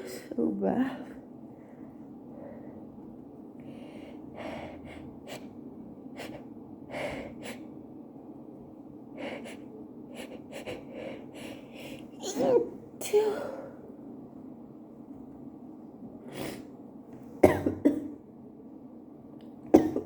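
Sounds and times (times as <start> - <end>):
woman sneezing: 12.2 - 13.5.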